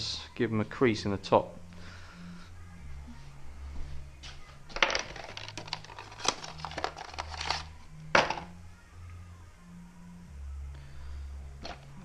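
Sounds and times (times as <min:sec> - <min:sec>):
crinkling rustles: 0:04.7 - 0:07.8.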